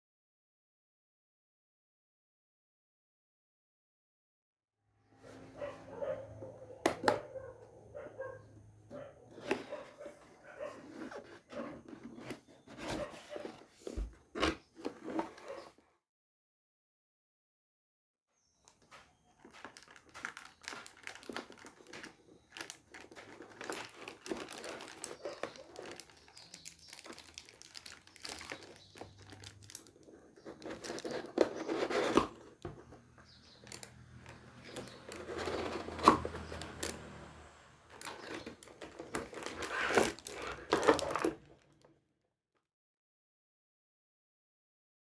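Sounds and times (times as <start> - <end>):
packaging crinkling: 19.2 - 41.6.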